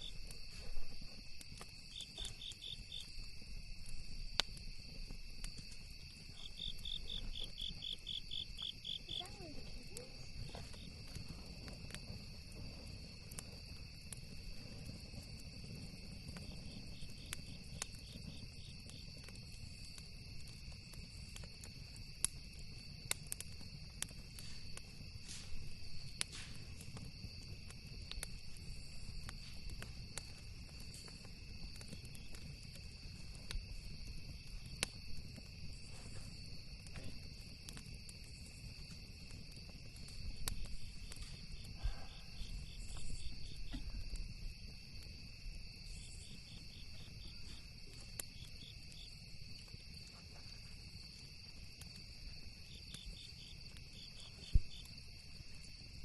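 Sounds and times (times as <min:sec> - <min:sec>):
campfire crackling and popping: 0:00.0 - 0:56.0
crickets chirping: 0:00.0 - 0:56.0.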